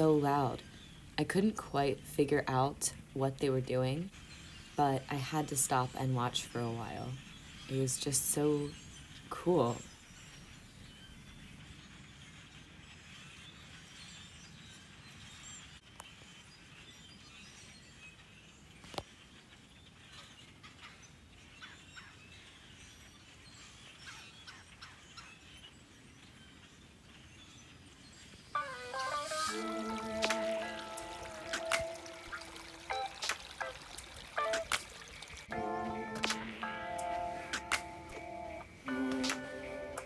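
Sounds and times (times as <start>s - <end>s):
birds chirping: 0.0s - 13.8s, 20.0s - 40.0s
outdoor background noise: 0.0s - 40.0s
music: 28.6s - 33.8s, 34.4s - 34.8s, 35.5s - 40.0s.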